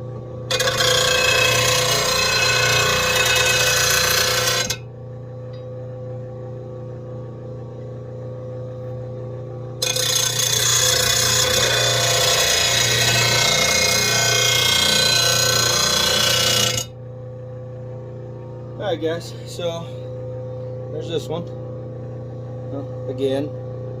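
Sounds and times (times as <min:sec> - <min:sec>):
sharpener motor humming: 0:00.5 - 0:04.8, 0:09.8 - 0:16.9
metal blade on grinding wheel: 0:00.5 - 0:04.9, 0:09.8 - 0:16.9.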